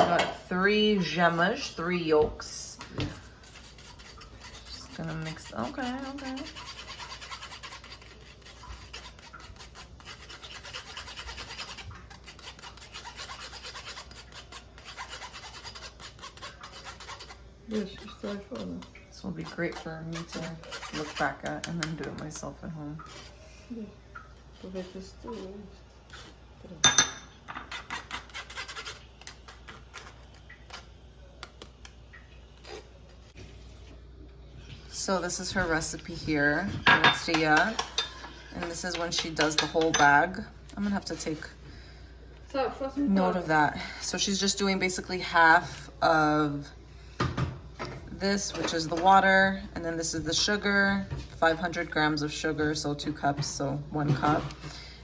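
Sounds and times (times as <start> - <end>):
whisk scraping against bowl: 0.0 - 23.5, 24.2 - 26.4, 27.6 - 30.9, 35.0 - 41.6.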